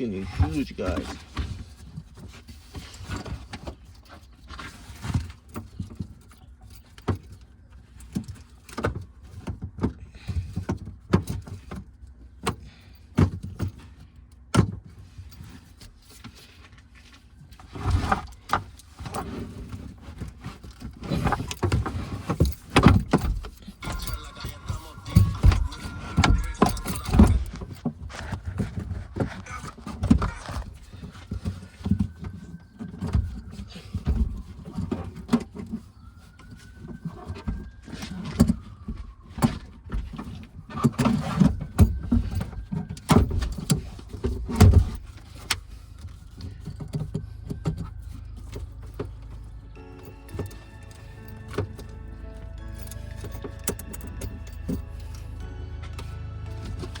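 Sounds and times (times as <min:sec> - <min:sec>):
hand tools clicking and clanking: 0:17.6 - 0:35.8, 0:40.2 - 0:57.0.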